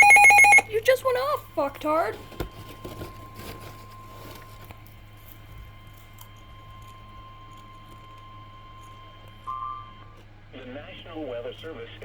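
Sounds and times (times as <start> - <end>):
steady alert tone: 0.0 - 0.6
steady low hum: 0.0 - 12.0
fainter higher tone: 2.6 - 10.2.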